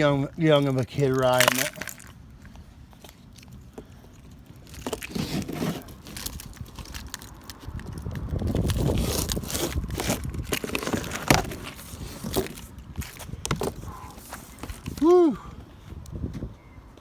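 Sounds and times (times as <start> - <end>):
packing tape ripping: 4.8 - 12.7
cardboard box being cut: 5.0 - 6.3, 8.7 - 12.7.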